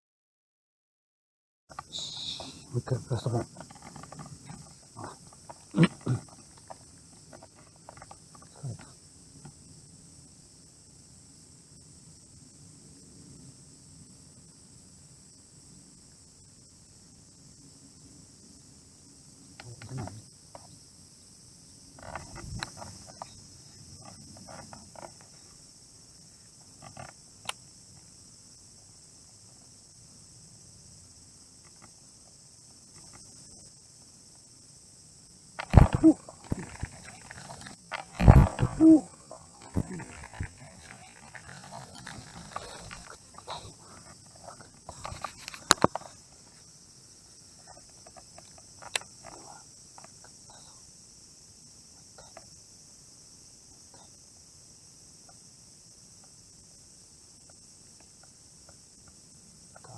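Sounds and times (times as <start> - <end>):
evening insects chorus: 1.7 - 59.9
steady high-pitched hiss: 1.7 - 59.9
sharp clicks or knocks: 35.6 - 39.0.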